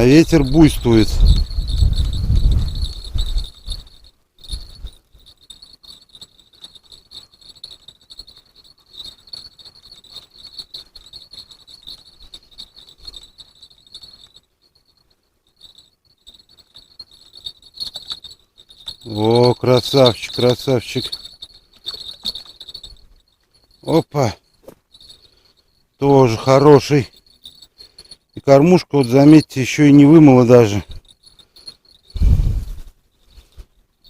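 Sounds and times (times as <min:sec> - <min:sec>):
wind gusts on microphone: 0:00.0 - 0:05.0, 0:32.1 - 0:32.9
insects chirring in pulsing trill: 0:00.0 - 0:34.0.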